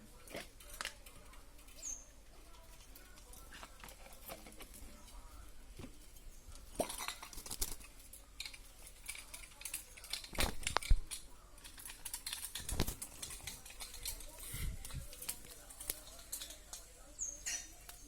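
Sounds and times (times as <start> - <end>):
parrot scratching and clicking: 6.8 - 16.9.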